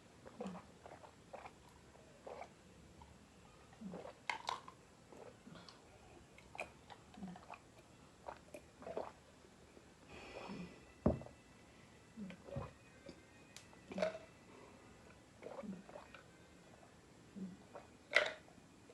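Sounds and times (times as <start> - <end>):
thump: 11.0 - 11.3.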